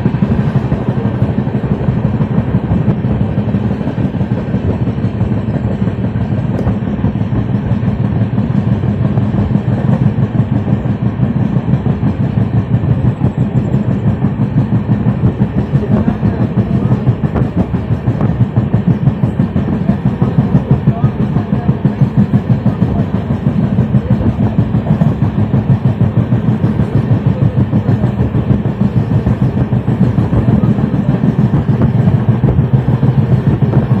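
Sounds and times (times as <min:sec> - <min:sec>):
train wheels clattering on track: 0:00.0 - 0:34.0.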